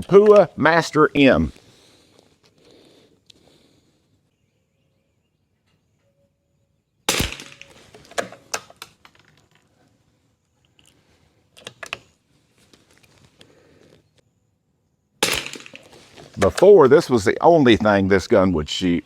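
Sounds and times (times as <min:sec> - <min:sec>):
rifle shot: 0:07.1 - 0:07.8, 0:15.2 - 0:16.0.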